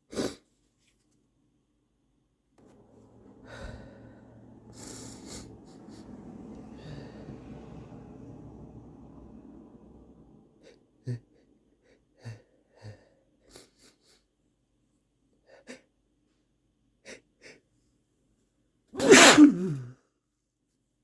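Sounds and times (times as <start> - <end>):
person sniffling: 3.4 - 6.0, 19.0 - 19.9
person sneezing: 19.0 - 19.9.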